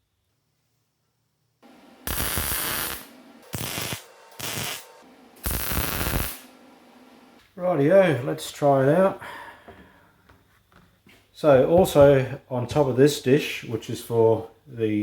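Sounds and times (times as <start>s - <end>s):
mig welding bursts: 1.7s - 6.6s.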